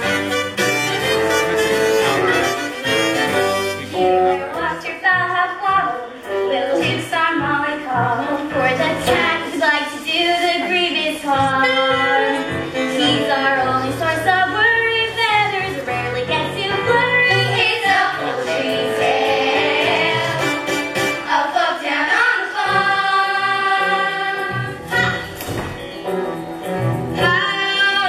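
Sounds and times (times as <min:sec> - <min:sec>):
instrumental accompaniment with bass: 0:00.0 - 0:09.8, 0:11.0 - 0:21.5, 0:22.1 - 0:28.0
voices singing musical theatre song: 0:00.0 - 0:25.6, 0:27.2 - 0:28.0.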